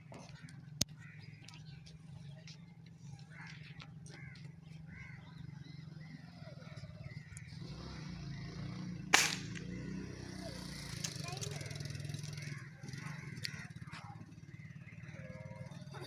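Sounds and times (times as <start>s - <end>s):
birds chirping: 0.0s - 16.0s
air rifle firing crack: 9.1s - 10.0s.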